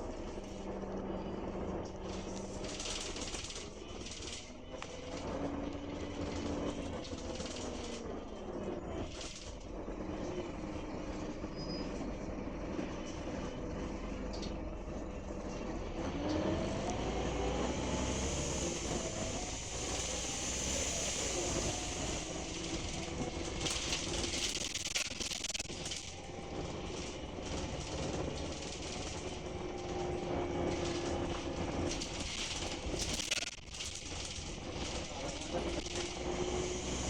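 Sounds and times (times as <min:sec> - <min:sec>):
bus diesel engine accelerating: 0:00.0 - 0:37.0
loud rattling hiss: 0:18.2 - 0:37.0.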